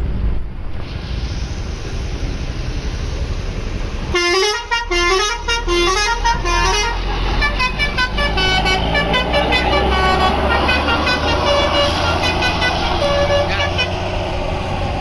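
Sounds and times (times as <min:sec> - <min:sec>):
bus engine running: 0:00.0 - 0:15.0
musical air horn tune: 0:04.1 - 0:14.2.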